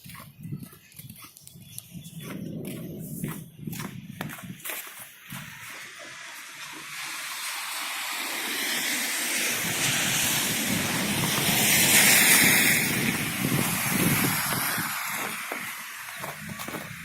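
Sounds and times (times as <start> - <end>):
road vehicle passing: 5.9 - 17.0.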